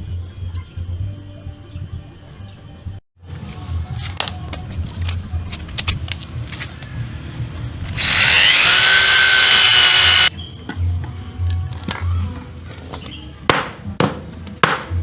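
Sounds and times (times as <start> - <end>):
power tool whining: 7.9 - 10.3.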